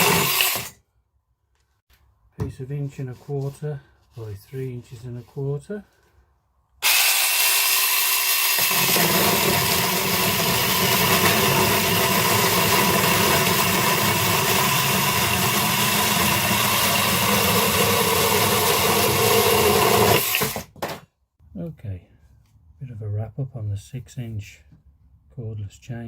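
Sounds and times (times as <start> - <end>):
cordless chainsaw cutting wood: 0.0 - 0.8, 6.8 - 20.6.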